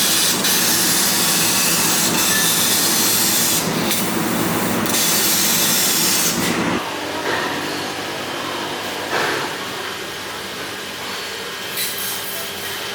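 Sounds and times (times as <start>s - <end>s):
laser cutter gas hiss: 0.0s - 6.8s.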